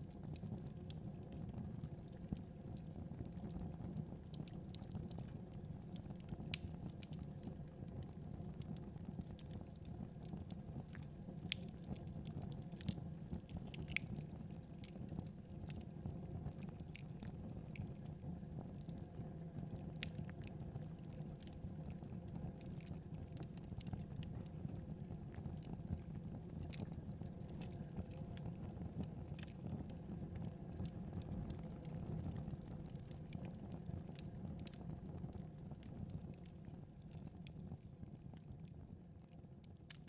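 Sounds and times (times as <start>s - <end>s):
wood fire crackling: 0.3s - 38.8s.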